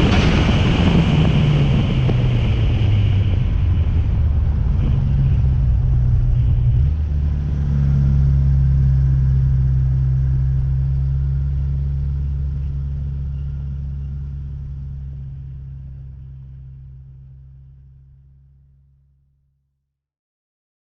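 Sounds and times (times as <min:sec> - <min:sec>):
race car engine running: 0:00.0 - 0:17.2.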